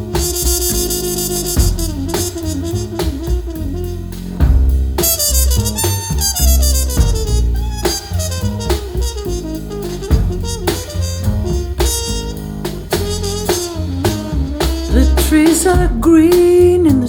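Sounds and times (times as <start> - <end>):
song through loudspeaker: 14.9 - 17.0.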